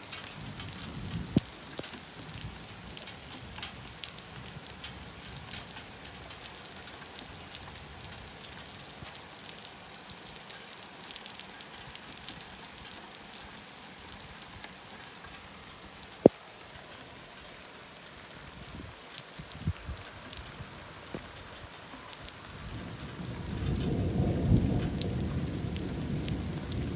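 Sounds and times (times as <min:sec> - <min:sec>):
rain pattering: 0:00.0 - 0:26.9
thunder rumbling: 0:00.4 - 0:01.5, 0:22.4 - 0:26.9.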